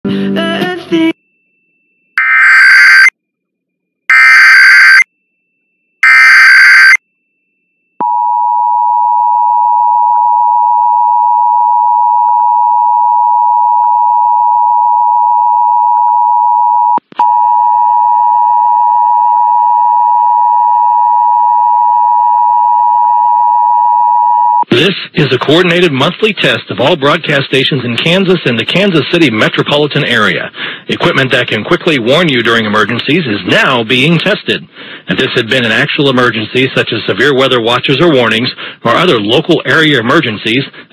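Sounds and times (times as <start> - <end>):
digital data tone bursts: 2.2 - 3.1, 4.1 - 5.1, 6.0 - 7.0
two-tone attention signal: 4.1 - 5.0, 6.0 - 7.0.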